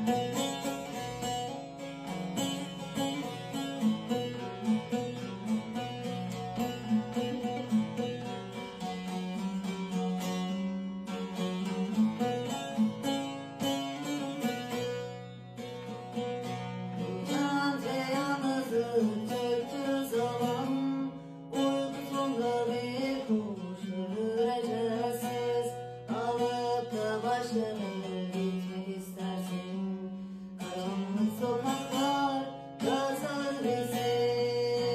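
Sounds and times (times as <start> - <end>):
long-necked lute plucked: 0.0 - 34.9
person singing: 17.0 - 34.9.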